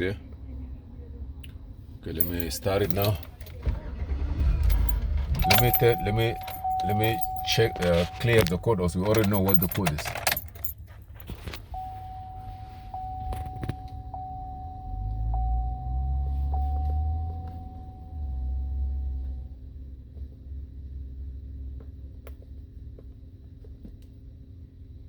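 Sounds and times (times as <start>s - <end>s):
car engine starting and rumbling: 0.0s - 23.6s
car warning chime: 4.7s - 10.7s, 11.7s - 19.5s.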